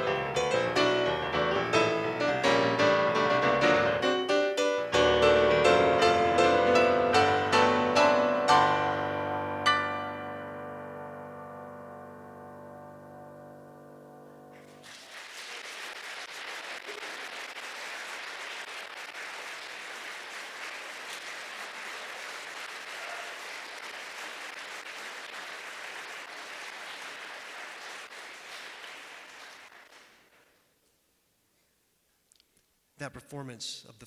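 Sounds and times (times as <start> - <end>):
music: 0.0 - 14.9
audience applauding: 14.6 - 30.5.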